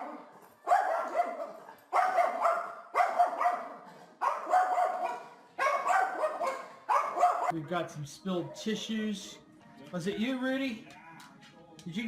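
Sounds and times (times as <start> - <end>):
dog barking: 0.0 - 7.6.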